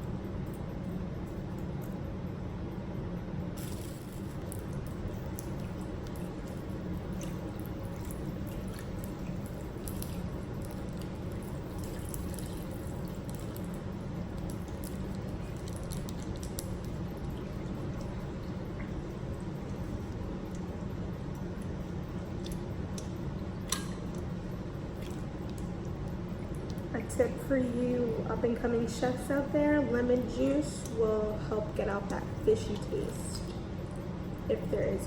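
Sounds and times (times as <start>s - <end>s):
low background hum: 0.0s - 35.0s.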